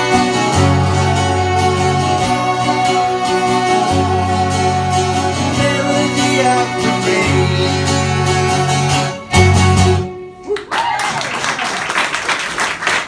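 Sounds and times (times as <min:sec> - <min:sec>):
guitar-led song: 0:00.0 - 0:10.6
audience applauding and cheering: 0:10.5 - 0:13.0.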